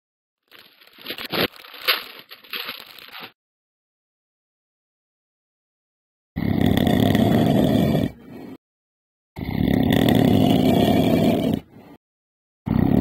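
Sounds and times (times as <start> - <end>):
loud rasping snores: 6.4 - 8.6, 9.4 - 12.0, 12.7 - 13.0.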